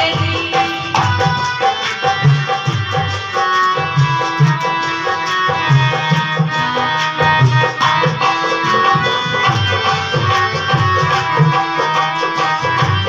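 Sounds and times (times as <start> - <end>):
hand drum rhythm: 0.0 - 13.0
sustained instrumental melody: 0.0 - 13.0.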